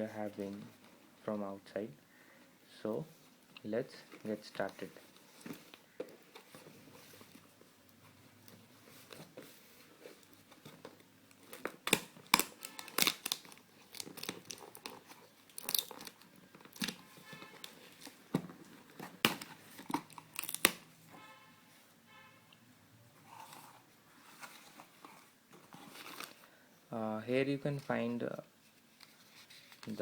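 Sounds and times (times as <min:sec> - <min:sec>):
packaging tearing and crinkling: 0:11.3 - 0:17.0, 0:19.2 - 0:20.8.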